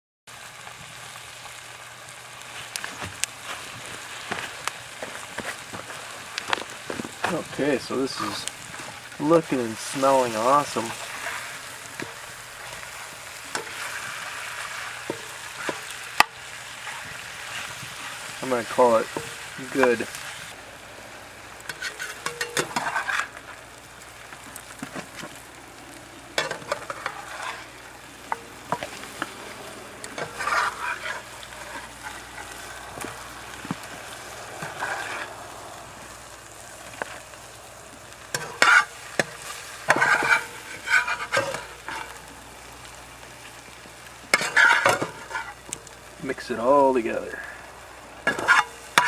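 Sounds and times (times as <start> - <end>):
food sizzling in oil: 0.3 - 49.0
utensil scraping a pan: 3.4 - 20.4, 21.7 - 23.5, 26.4 - 33.2, 34.4 - 35.4, 38.3 - 42.2, 44.3 - 45.7, 48.2 - 49.0.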